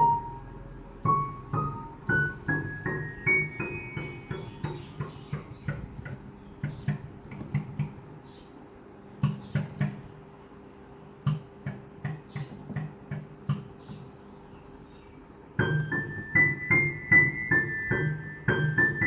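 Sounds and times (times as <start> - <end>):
faint steady hum: 0.0 - 4.2.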